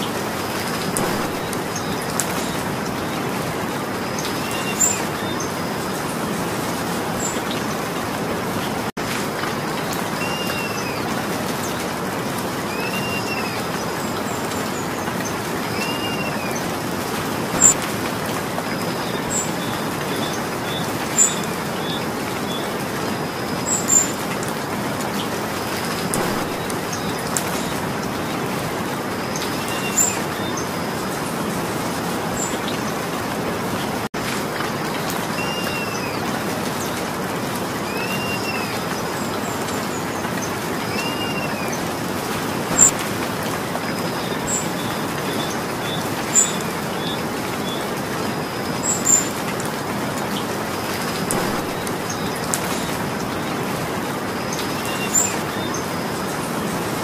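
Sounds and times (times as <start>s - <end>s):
steady rain falling: 0.0s - 57.0s
bird chirping: 1.0s - 2.6s, 17.6s - 17.8s, 26.1s - 27.8s, 42.7s - 43.0s, 51.2s - 53.0s.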